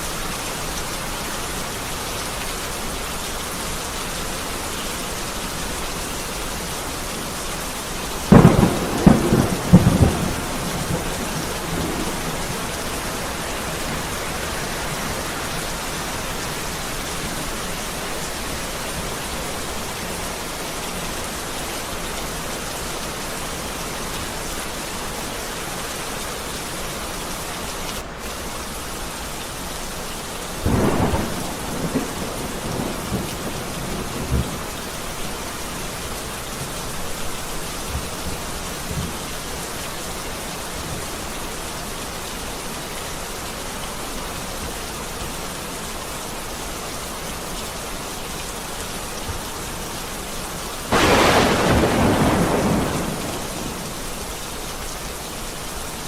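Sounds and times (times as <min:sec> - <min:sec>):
heavy rain falling: 0:00.0 - 0:56.0
thunder cracking and rumbling: 0:08.3 - 0:18.7, 0:30.6 - 0:34.7, 0:50.9 - 0:54.2.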